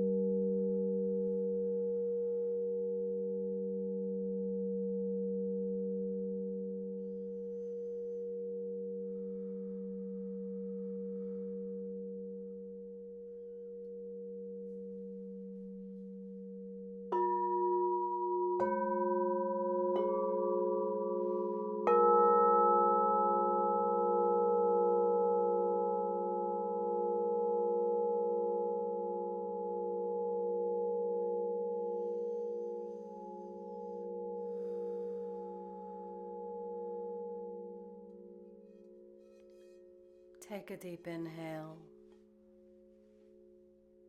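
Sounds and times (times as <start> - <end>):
singing bowls ringing: 14.0 - 39.0.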